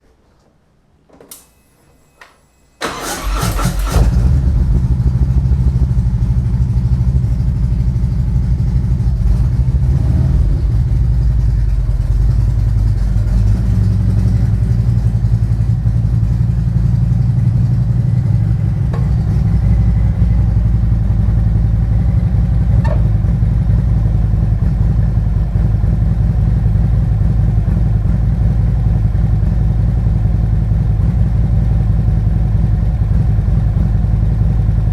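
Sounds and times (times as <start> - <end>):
starter cranking: 2.8 - 4.3
motorcycle engine running: 3.0 - 34.9.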